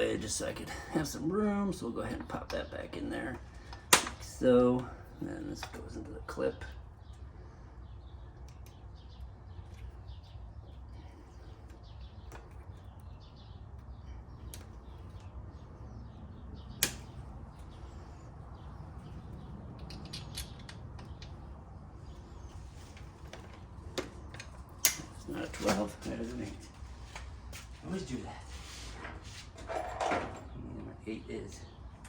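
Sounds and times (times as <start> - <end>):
steady low hum: 0.0 - 29.6
hand tools and parts clinking: 19.7 - 21.5, 29.5 - 30.5.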